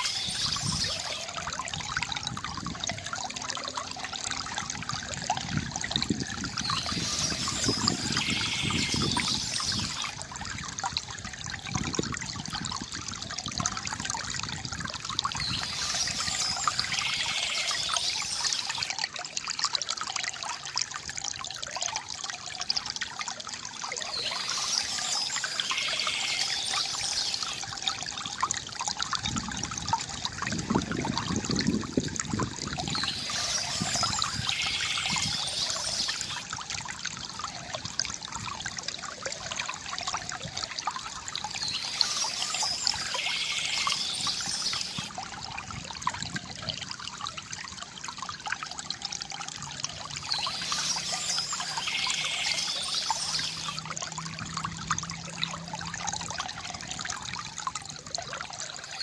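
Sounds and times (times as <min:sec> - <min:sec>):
fountain water trickling into basin: 0:00.0 - 0:59.0.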